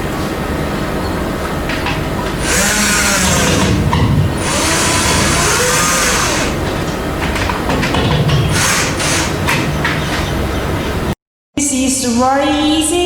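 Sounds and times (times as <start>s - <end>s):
electric drill running: 2.4s - 3.8s, 4.4s - 6.6s, 8.5s - 9.4s.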